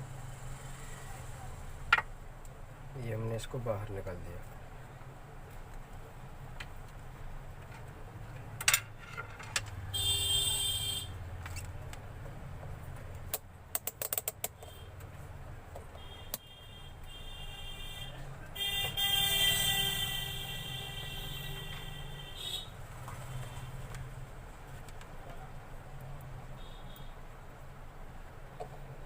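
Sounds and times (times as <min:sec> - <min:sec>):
small parts clicking and tapping: 0:13.1 - 0:16.5.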